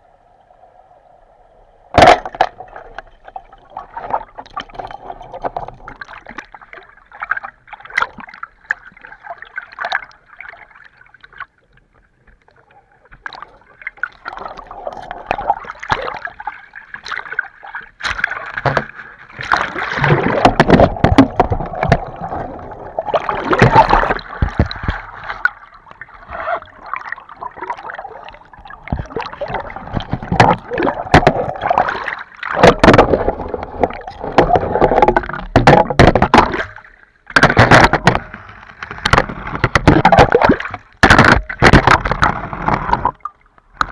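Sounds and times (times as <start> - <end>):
water gurgling and sloshing: 0.0 - 43.9
scattered clicks and knocks: 37.4 - 40.3.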